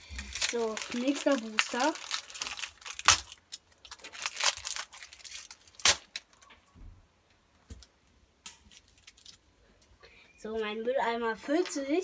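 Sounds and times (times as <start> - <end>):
wrapper crinkling and tearing: 0.0 - 6.6, 8.6 - 9.5.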